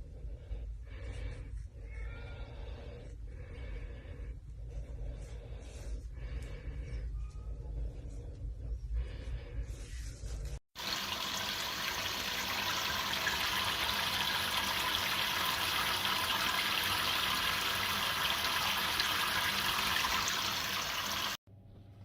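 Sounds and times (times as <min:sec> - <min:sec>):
running water rushing: 0:10.8 - 0:21.4.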